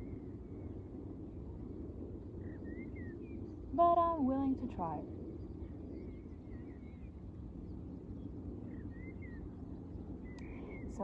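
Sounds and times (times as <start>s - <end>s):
faint hum: 0.0s - 11.0s
faint bird chirps: 8.2s - 11.0s.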